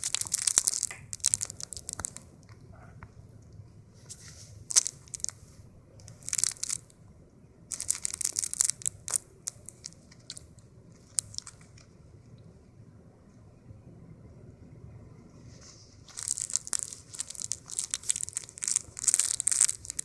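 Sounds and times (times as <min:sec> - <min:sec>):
crisp crinkling and crunching: 0:00.0 - 0:02.6, 0:04.6 - 0:05.4, 0:06.0 - 0:06.9, 0:07.7 - 0:11.8, 0:16.0 - 0:20.0.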